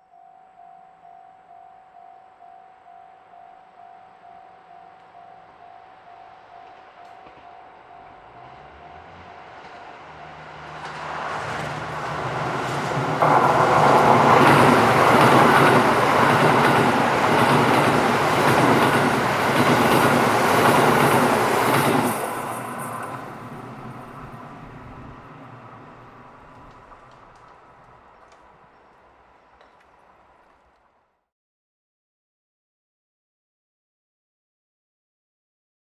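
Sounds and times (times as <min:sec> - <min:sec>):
diesel engine of passing train: 0:03.6 - 0:31.1
train wheels clacking on rail joints: 0:06.4 - 0:31.0.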